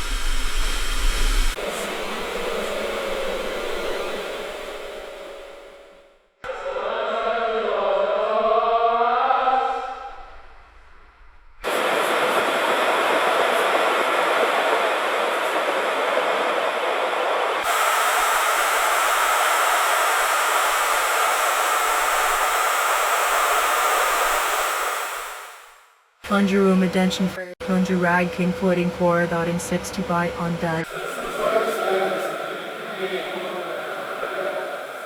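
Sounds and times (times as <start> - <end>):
whining laundry machine: 11.6 - 25.5, 26.3 - 31.8
loud rushing noise: 11.6 - 25.9.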